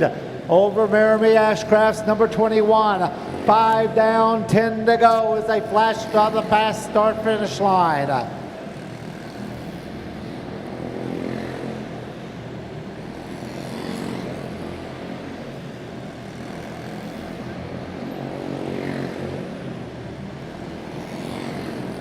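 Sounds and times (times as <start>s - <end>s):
race car engines buzzing: 0.0s - 22.0s.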